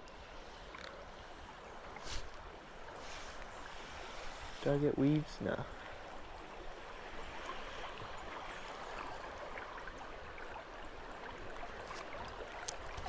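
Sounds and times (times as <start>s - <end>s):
faint ticks: 0.0s - 1.0s
creek water running: 0.0s - 13.0s.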